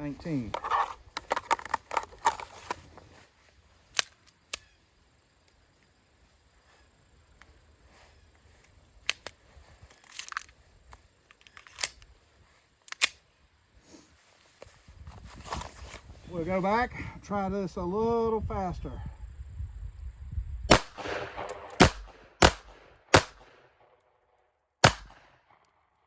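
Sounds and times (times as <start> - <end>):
pistol metallic clicks: 9.0 - 9.4, 10.0 - 12.1, 12.8 - 13.2, 20.7 - 24.1, 24.8 - 25.8.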